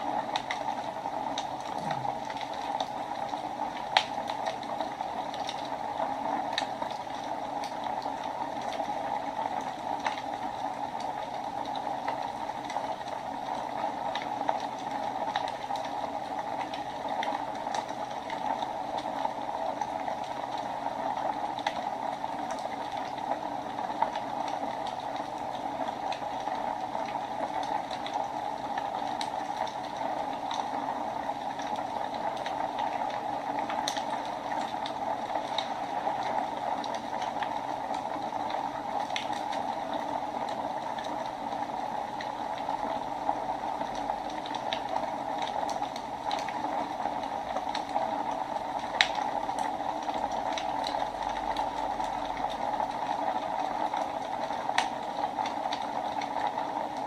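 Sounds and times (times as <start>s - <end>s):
fire hissing: 0.0s - 4.5s
fire crackling and popping: 0.0s - 57.0s.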